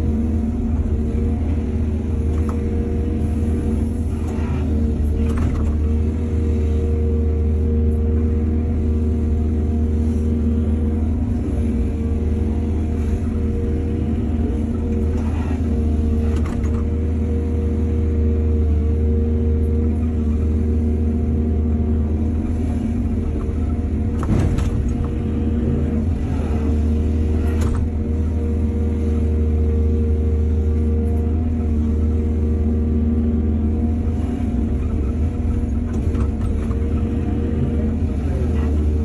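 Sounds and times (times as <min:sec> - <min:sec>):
excavator diesel engine humming: 0:00.0 - 0:39.0.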